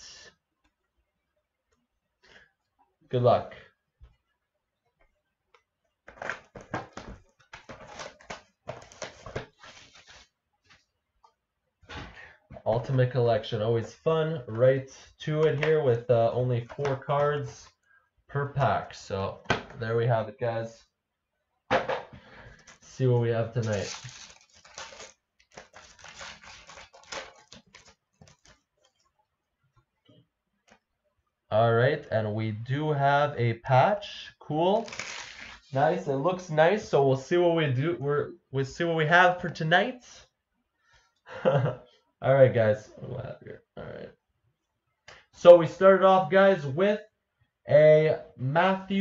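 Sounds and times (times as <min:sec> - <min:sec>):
card pack crinkling and rustling: 0:06.1 - 0:10.3, 0:23.6 - 0:29.0, 0:34.8 - 0:35.7
shrink wrap crackling and tearing: 0:23.6 - 0:28.6, 0:34.8 - 0:35.7.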